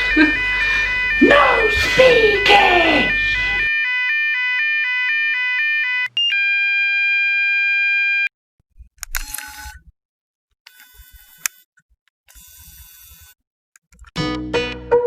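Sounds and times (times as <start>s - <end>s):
electronic fire alarm: 0.0s - 8.3s.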